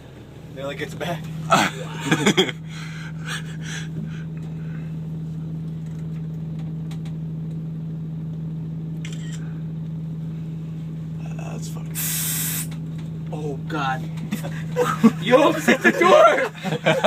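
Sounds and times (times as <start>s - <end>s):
steady low hum: 0.0s - 17.0s
brief hiss: 12.0s - 12.8s.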